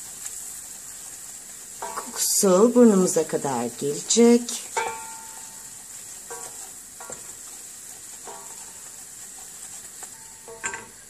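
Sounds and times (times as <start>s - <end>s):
roux sizzling in a pot: 0.0s - 11.0s
spoon scraping a pot: 1.8s - 3.2s, 3.8s - 11.0s.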